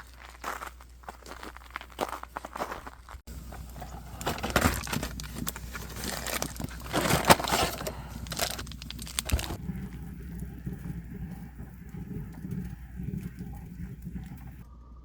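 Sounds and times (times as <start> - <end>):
footsteps crunching over ground: 0.0 - 9.6.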